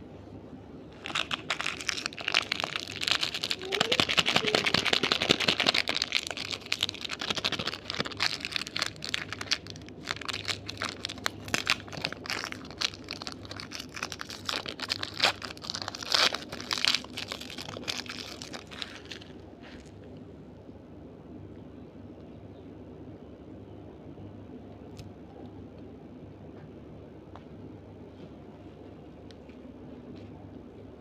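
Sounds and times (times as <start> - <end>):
plastic wrapper crinkling: 1.0 - 20.0.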